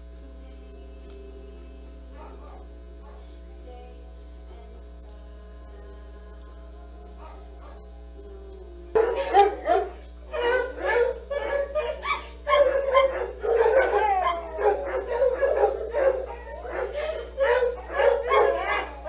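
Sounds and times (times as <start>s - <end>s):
dogs barking and howling: 2.2s - 3.3s, 7.0s - 8.0s, 8.9s - 19.0s.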